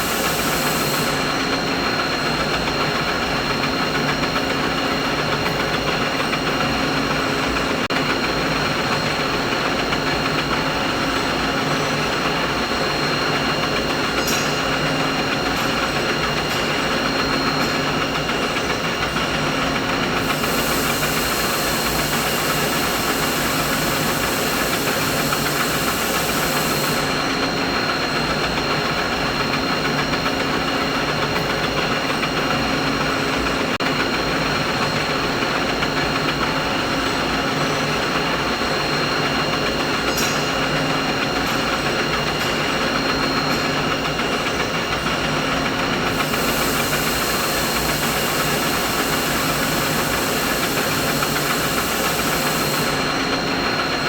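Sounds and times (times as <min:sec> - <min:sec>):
machinery drone with high whine: 0:00.0 - 0:54.0
high hiss: 0:20.2 - 0:27.1, 0:46.1 - 0:53.2.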